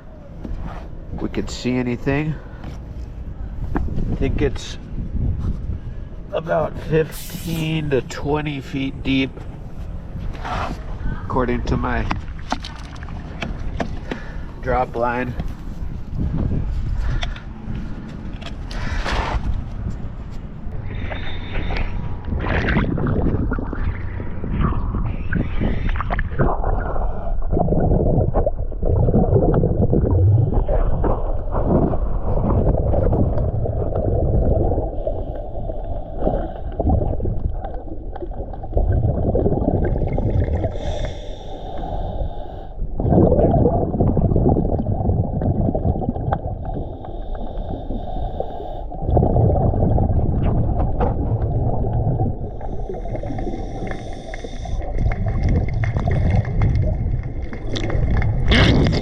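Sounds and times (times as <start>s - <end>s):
exhaled breath bubbling underwater: 20.7s - 59.0s.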